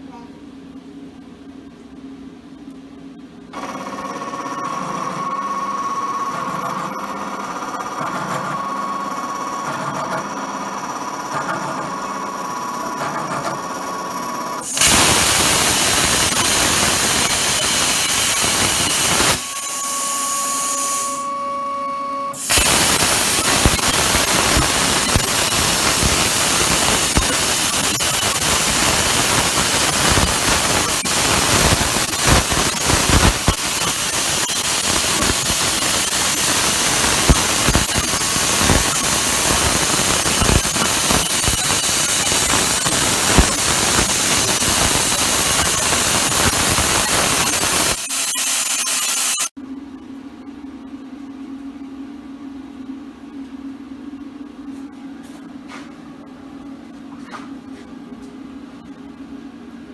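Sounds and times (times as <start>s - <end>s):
steady electric whine: 0.0s - 49.6s
plasma cutter hissing: 14.6s - 21.2s, 22.3s - 49.6s.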